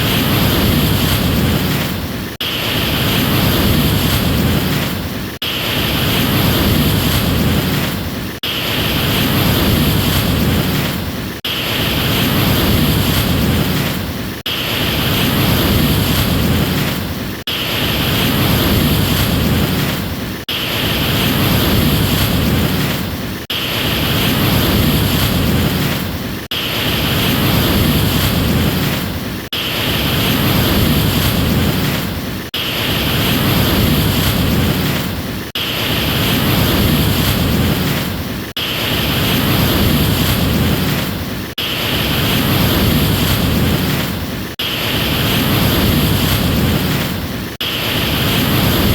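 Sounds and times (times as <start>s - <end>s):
ocean waves: 0.0s - 48.9s.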